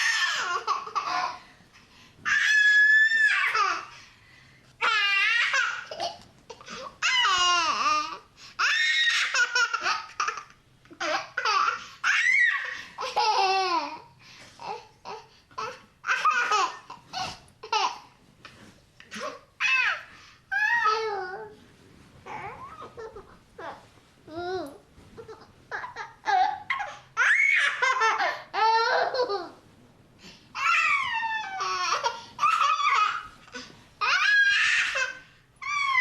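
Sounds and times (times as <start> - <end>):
baby laughing: 25.2 - 29.6.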